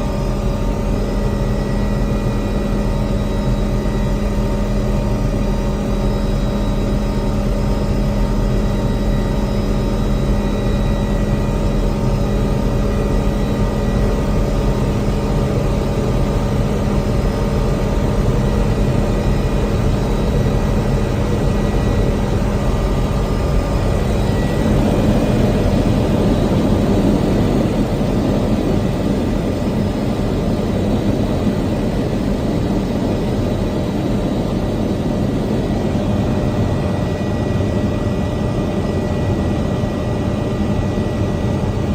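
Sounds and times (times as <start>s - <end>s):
aircraft engine drone: 0.0s - 41.9s.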